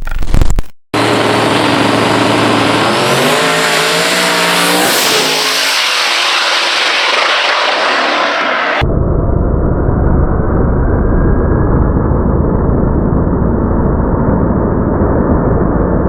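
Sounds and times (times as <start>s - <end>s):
drag car accelerating: 1.0s - 8.8s
loud steady rushing noise: 1.0s - 16.0s.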